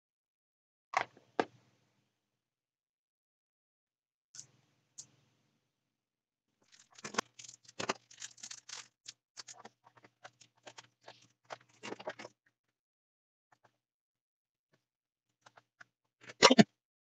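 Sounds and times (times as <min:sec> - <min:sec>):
hands scraping and rustling parts: 0:06.6 - 0:12.4.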